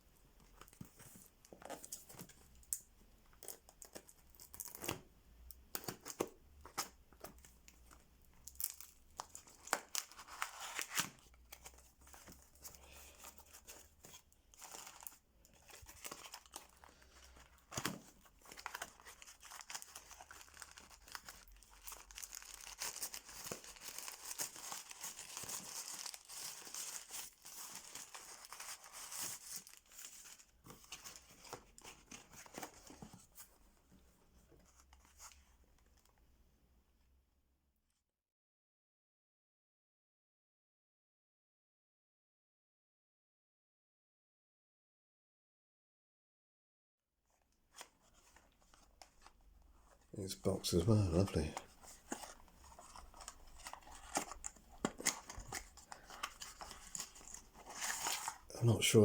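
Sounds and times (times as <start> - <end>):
wrapping crinkling and rustling: 0.4 - 5.1, 5.7 - 33.6, 47.7 - 59.0.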